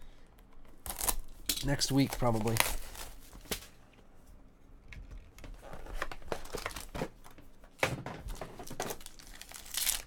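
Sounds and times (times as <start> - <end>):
card pack wrappers crinkling: 0.8 - 3.7, 8.6 - 10.0.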